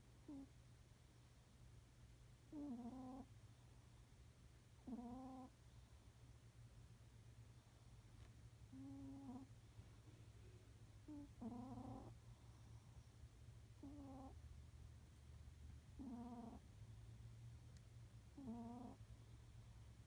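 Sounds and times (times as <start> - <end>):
cat snoring: 0.3 - 0.5, 2.5 - 3.3, 4.8 - 5.6, 8.7 - 9.5, 11.0 - 12.7, 13.8 - 14.4, 16.0 - 16.6, 18.4 - 19.0.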